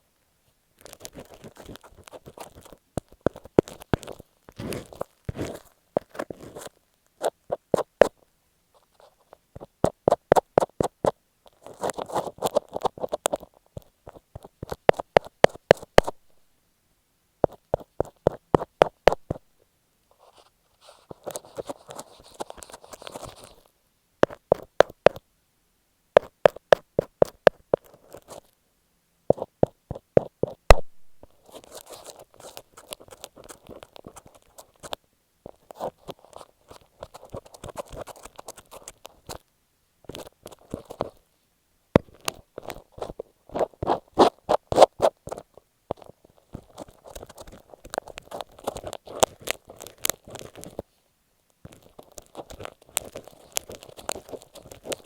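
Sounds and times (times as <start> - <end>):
fingers tapping on tape: 0.8 - 8.2, 9.6 - 16.2, 17.4 - 19.4, 24.2 - 25.2, 26.2 - 28.4, 29.3 - 39.4
scratchy rubbing on microphone: 0.8 - 8.2, 8.8 - 16.3, 20.2 - 25.2, 29.3 - 39.4, 42.0 - 50.9, 51.7 - 55.0.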